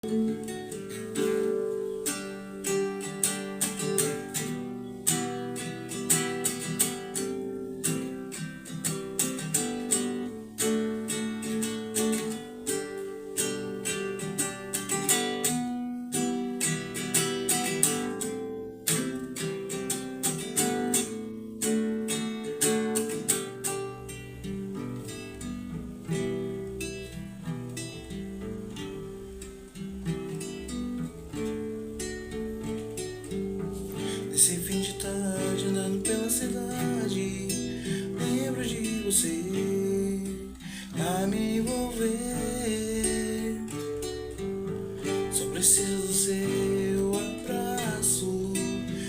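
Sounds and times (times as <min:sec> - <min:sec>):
acoustic guitar strumming: 0:00.0 - 0:49.0.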